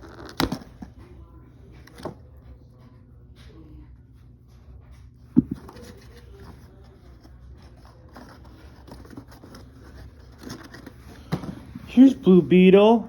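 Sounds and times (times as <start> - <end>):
cardboard and plastic rustling: 5.4 - 12.7.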